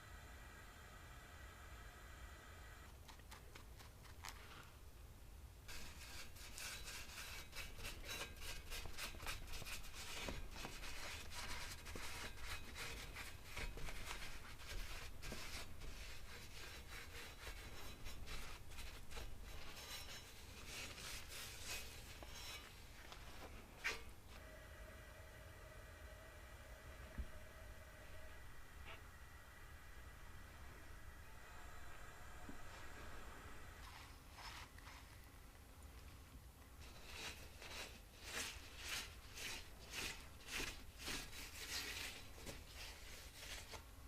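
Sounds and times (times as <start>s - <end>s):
rapid rubbing strokes: 5.7s - 24.1s.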